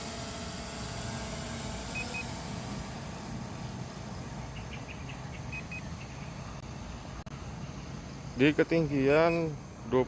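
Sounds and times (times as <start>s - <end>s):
drone propellers humming: 0.0s - 8.4s
double electronic beep: 5.5s - 5.9s, 9.1s - 9.5s.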